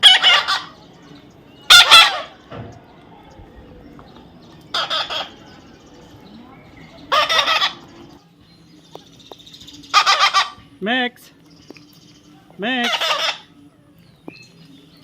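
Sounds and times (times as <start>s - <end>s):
parrot squawking: 0.0s - 0.8s, 1.7s - 2.4s, 4.7s - 5.5s, 7.1s - 8.0s, 9.9s - 10.6s, 12.7s - 13.6s.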